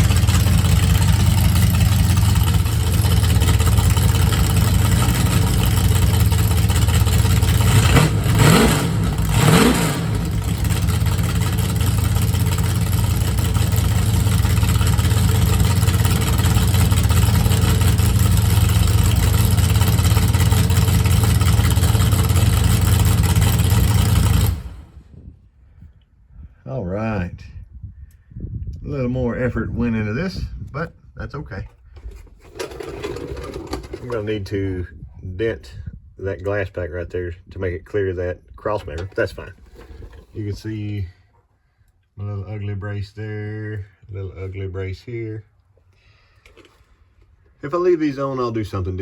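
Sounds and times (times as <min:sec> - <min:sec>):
car engine idling loudly: 0:00.0 - 0:25.0
engine revving: 0:00.0 - 0:25.0.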